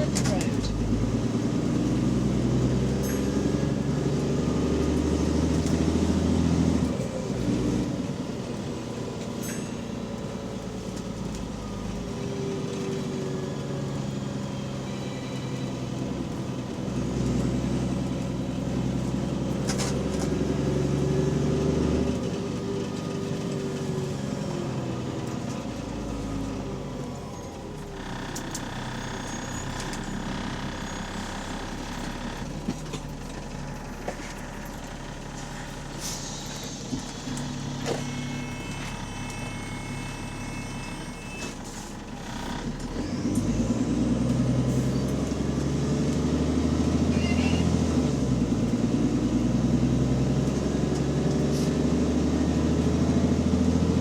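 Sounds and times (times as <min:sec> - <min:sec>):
bus engine with leaking exhaust: 0:00.0 - 0:54.0.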